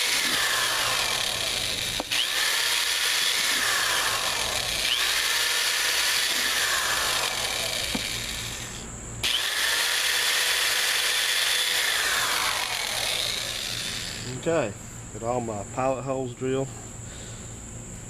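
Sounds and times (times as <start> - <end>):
power drill boring into plastic: 0.0 - 14.3.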